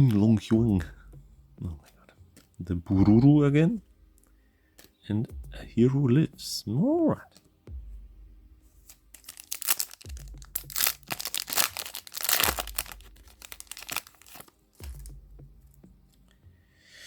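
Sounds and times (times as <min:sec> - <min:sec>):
foil pack tearing and crinkling: 0:08.9 - 0:15.1.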